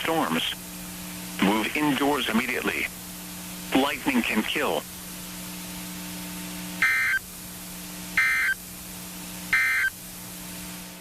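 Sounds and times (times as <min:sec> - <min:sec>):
low steady hum: 0:00.0 - 0:11.0
buzzy data-tone bursts: 0:06.6 - 0:07.3, 0:08.0 - 0:08.7, 0:09.5 - 0:10.0.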